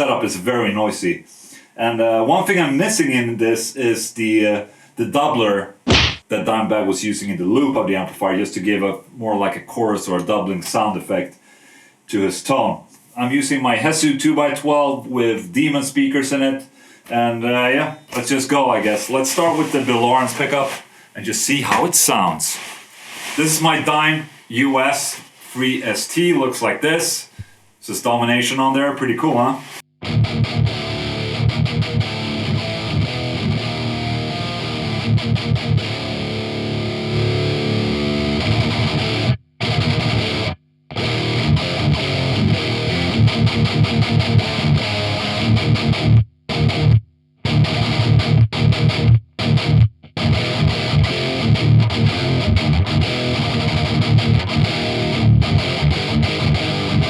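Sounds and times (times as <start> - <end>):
distorted electric guitar riffs: 30.0 - 57.0.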